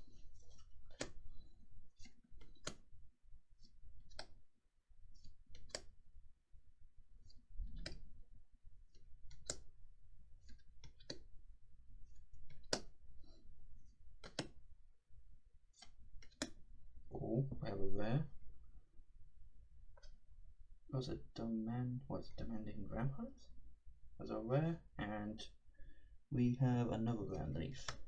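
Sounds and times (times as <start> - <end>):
card shuffling and ticks: 0.1 - 1.3, 2.0 - 2.9, 10.4 - 11.3, 14.2 - 14.6, 15.8 - 16.6
trading card snaps: 14.2 - 14.6.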